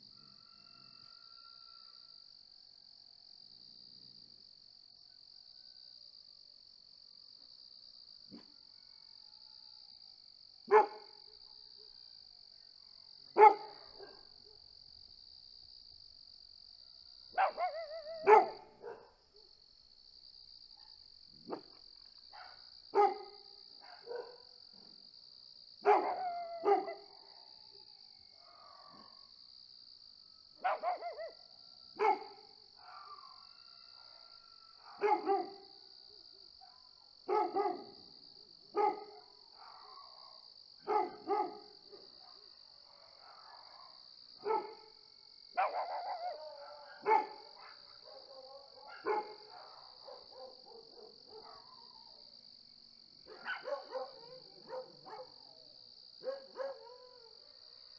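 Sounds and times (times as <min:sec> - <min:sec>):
crickets chirring: 0:09.8 - 0:57.9
dogs barking: 0:13.4 - 0:14.2, 0:17.4 - 0:19.1, 0:22.4 - 0:24.4, 0:25.8 - 0:27.1, 0:30.6 - 0:31.4, 0:32.0 - 0:33.3, 0:34.9 - 0:35.6, 0:37.3 - 0:38.0, 0:38.8 - 0:42.5, 0:43.2 - 0:44.8, 0:45.6 - 0:52.1, 0:53.3 - 0:55.6, 0:56.2 - 0:57.2.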